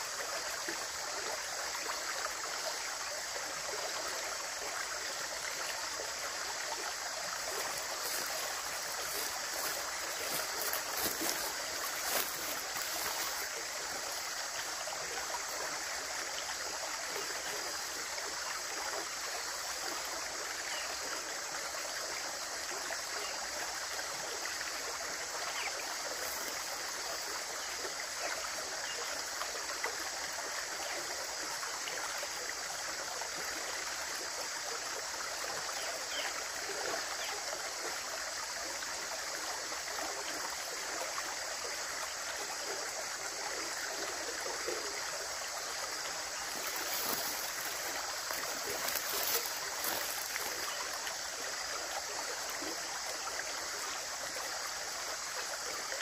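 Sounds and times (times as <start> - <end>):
running water: 0.0 - 56.0
water splashing: 5.6 - 14.8, 45.6 - 51.2.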